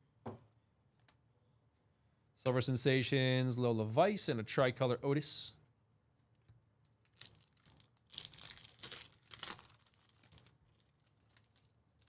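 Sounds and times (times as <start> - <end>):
card pack wrapper tearing and crinkling: 7.0 - 12.0.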